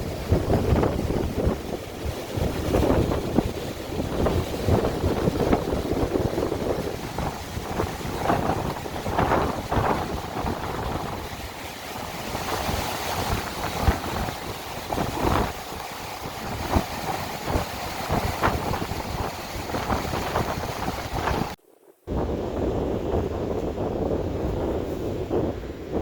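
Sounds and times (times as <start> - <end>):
wind buffeting microphone: 0.0 - 26.0.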